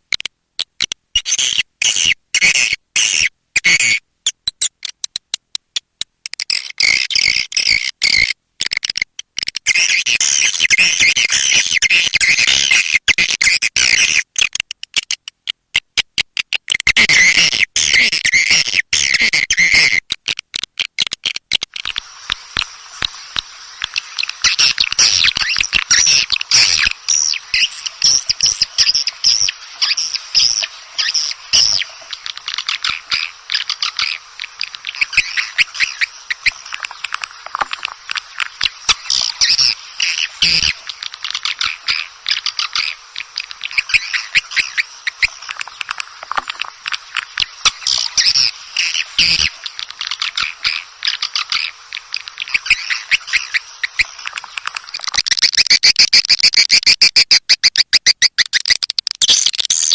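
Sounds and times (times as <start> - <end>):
swiftlets twittering: 21.7 - 59.9.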